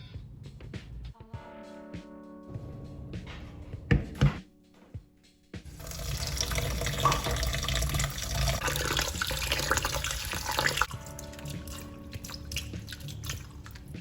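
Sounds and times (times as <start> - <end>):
tap water running into sink: 5.7 - 13.9
water dripping: 5.7 - 14.0.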